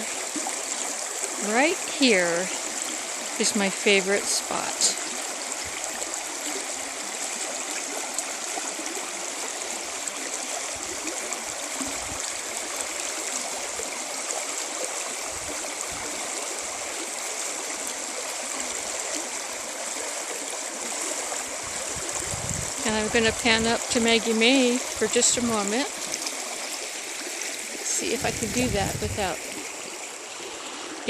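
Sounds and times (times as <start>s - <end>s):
creek water running over rocks: 0.0s - 31.0s.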